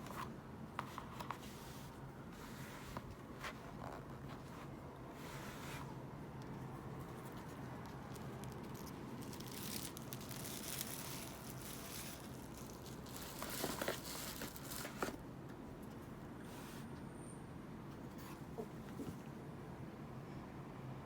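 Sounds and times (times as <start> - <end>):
packaging crinkling and rustling: 7.0 - 15.2.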